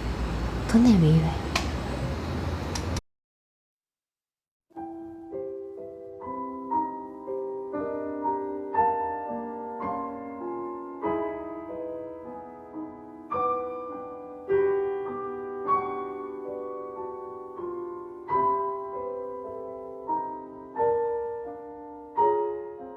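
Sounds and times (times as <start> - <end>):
slow solo piano: 4.8 - 22.9.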